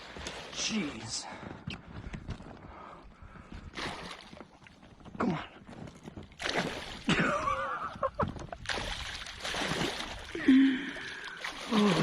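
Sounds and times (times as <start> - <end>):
water splashing and sloshing: 0.0 - 1.6, 2.7 - 12.0
fish thrashing in water: 6.3 - 7.3, 8.4 - 12.0.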